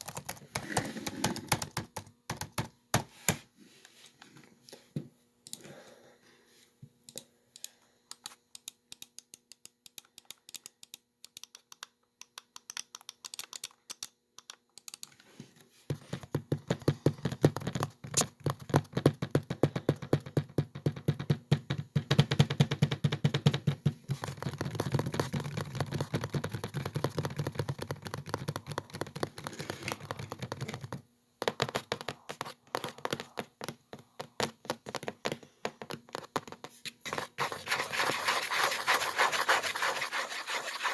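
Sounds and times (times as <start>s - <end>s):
typing on laptop keyboard: 0.0s - 3.0s, 15.9s - 36.6s.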